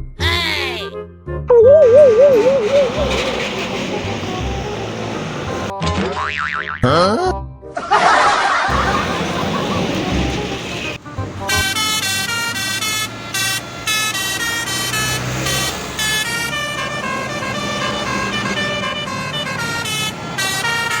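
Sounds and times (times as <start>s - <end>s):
musical bus horn melody: 1.7s - 5.7s, 8.7s - 21.0s.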